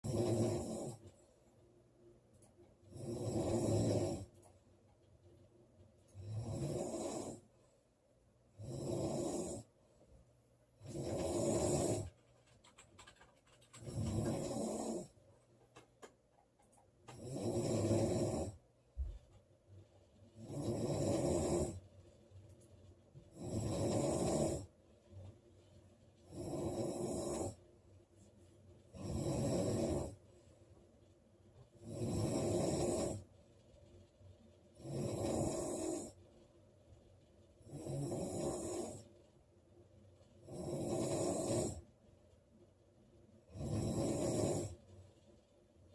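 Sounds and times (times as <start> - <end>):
woman snoring loudly: 0.0 - 1.0, 2.9 - 4.3, 6.2 - 7.4, 8.6 - 9.7, 10.8 - 12.1, 13.8 - 15.1, 17.1 - 18.6, 20.4 - 21.8, 23.4 - 24.7, 26.3 - 27.6, 29.0 - 30.2, 31.8 - 33.2, 34.8 - 36.1, 37.7 - 39.0, 40.5 - 41.8, 43.5 - 44.8.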